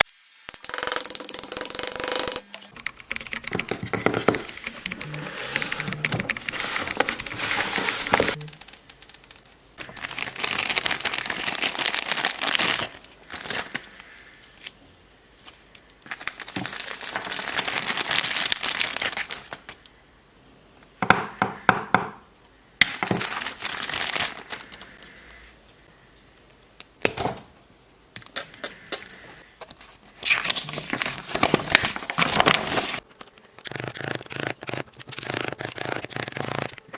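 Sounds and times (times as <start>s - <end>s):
packaging rustling and crinkling: 10.7s - 14.1s, 15.4s - 19.8s, 22.9s - 24.9s, 29.8s - 33.6s.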